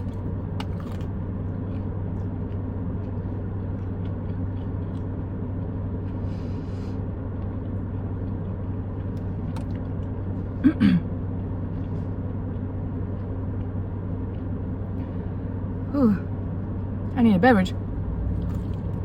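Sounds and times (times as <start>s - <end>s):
chewing clicks: 0.0s - 6.2s, 18.4s - 19.0s
car engine idling: 0.0s - 19.0s.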